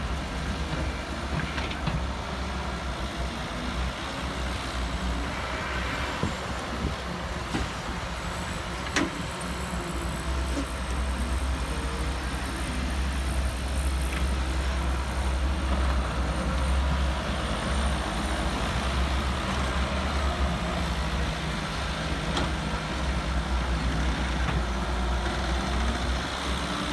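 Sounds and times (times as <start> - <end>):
diesel engines running: 0.0 - 26.9.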